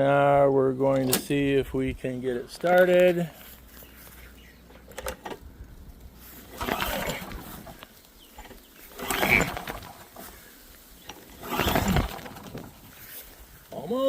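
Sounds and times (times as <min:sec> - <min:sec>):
recoil starter cord pulls: 0:06.4 - 0:10.4, 0:11.0 - 0:13.2.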